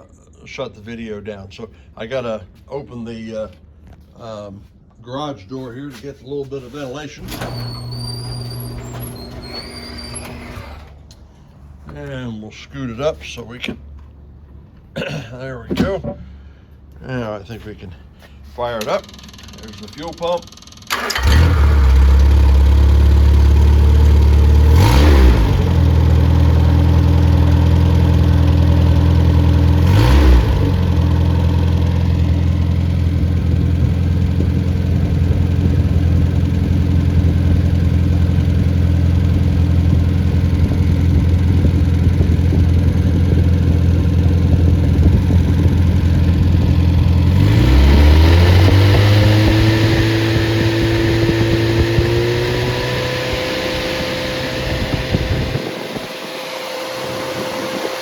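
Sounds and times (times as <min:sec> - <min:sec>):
car engine revving: 0:20.9 - 0:57.9.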